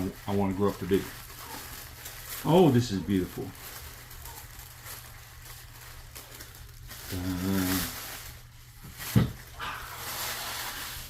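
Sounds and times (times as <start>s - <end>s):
voiced hum or groan: 6.9s - 8.2s, 9.5s - 10.9s.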